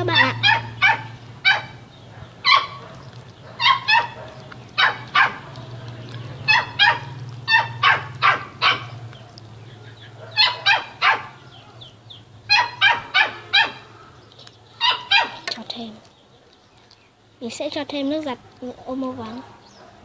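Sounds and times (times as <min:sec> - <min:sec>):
dog yapping: 0:00.0 - 0:09.5, 0:10.2 - 0:11.8, 0:12.5 - 0:14.2, 0:14.8 - 0:15.5.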